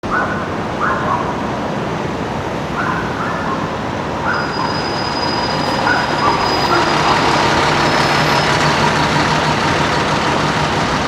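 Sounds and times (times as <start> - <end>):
city traffic: 0.0 - 11.0
short high animal calls: 4.3 - 9.0.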